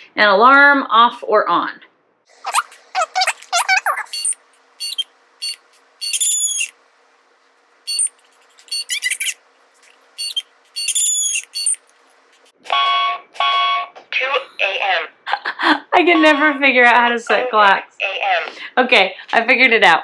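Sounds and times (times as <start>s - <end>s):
chirping whistle-like glides: 2.5s - 6.7s, 10.2s - 11.8s
alarm clock electronic beeps: 4.1s - 6.7s.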